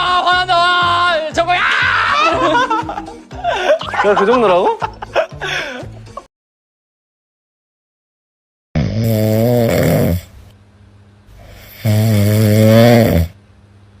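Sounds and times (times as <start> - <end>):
faint breathing: 5.4 - 6.0
man snoring: 8.8 - 10.4, 11.4 - 13.4.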